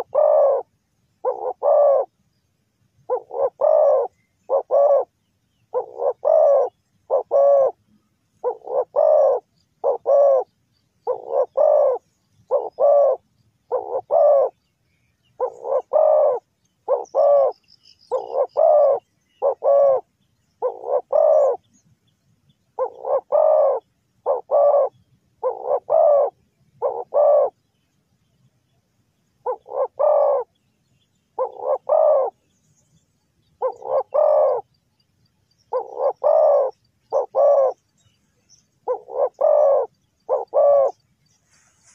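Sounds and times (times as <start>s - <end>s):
dove cooing: 0.0s - 2.2s, 3.0s - 7.8s, 8.4s - 14.6s, 15.3s - 21.8s, 22.8s - 27.7s, 29.4s - 30.6s, 31.4s - 32.4s, 33.6s - 34.8s, 35.7s - 37.8s, 38.8s - 41.0s.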